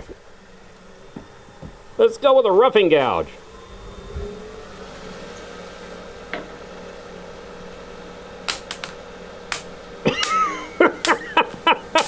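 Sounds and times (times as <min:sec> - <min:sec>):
gouge clacking on plastic: 0:08.5 - 0:12.0
loud cracks: 0:08.5 - 0:12.0.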